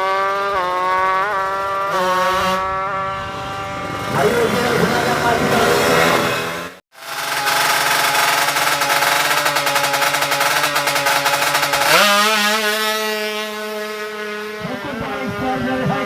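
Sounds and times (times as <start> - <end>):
two-stroke motorcycle engine revving: 0.0 - 16.0.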